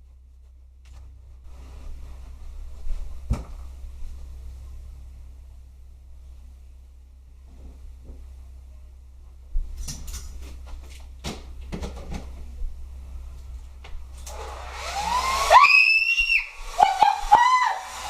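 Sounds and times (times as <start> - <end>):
hair dryer blowing air: 14.2 - 18.0
woman screaming: 15.4 - 18.0.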